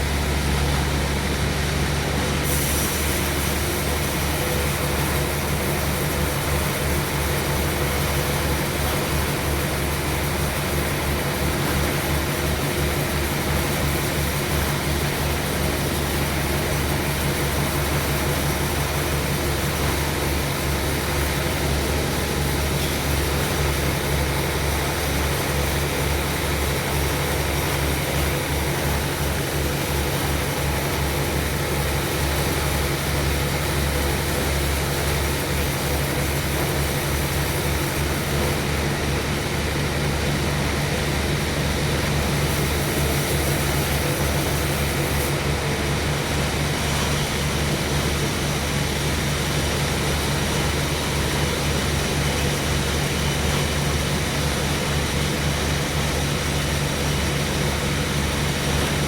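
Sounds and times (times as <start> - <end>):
sawmill machinery running: 0.0 - 59.0.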